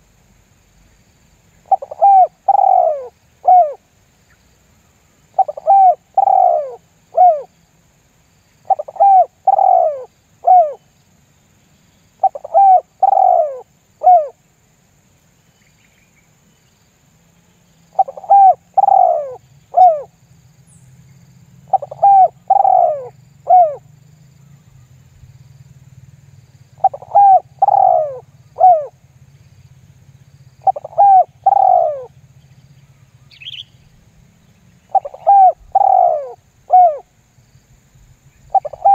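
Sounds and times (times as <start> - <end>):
dove cooing: 1.6 - 3.9, 5.4 - 7.5, 8.6 - 10.8, 12.2 - 14.4, 17.9 - 20.2, 21.6 - 23.9, 26.7 - 29.0, 30.6 - 32.2, 34.8 - 37.1, 38.5 - 38.9.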